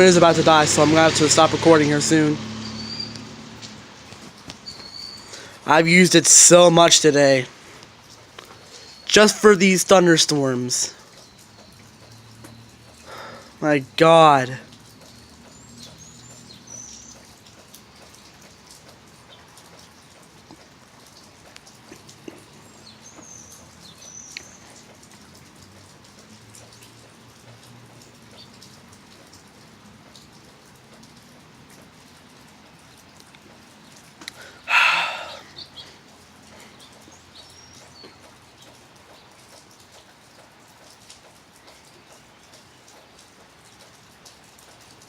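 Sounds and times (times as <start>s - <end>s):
steady rain falling: 0.0s - 45.0s
high bird chirps: 2.6s - 3.2s, 4.6s - 5.4s.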